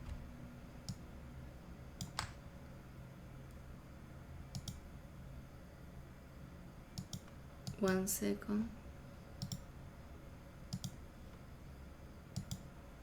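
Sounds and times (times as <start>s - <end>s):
low steady hum: 0.0s - 13.0s
computer mouse clicks: 2.0s - 2.4s, 4.5s - 4.8s, 7.0s - 8.0s, 9.4s - 9.6s, 10.7s - 11.0s, 12.3s - 12.7s.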